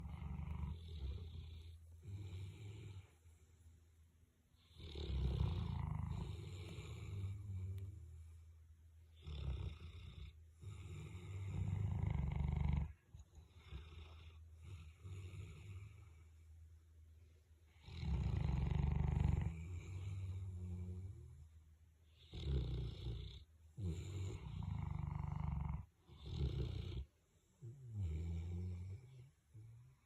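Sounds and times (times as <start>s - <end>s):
dog snoring: 0.0s - 3.4s, 4.6s - 8.3s, 9.1s - 16.4s, 17.7s - 30.0s.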